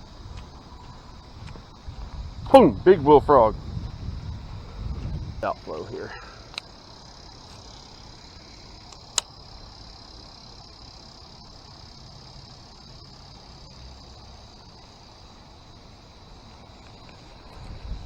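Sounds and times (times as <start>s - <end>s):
insects chirring: 0.0s - 18.0s
sharp click: 8.8s - 9.3s.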